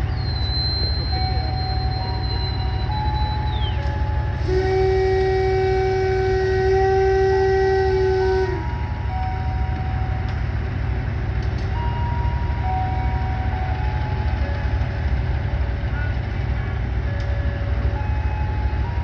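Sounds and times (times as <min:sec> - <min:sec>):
wheezy locomotive horn: 0:00.0 - 0:09.7.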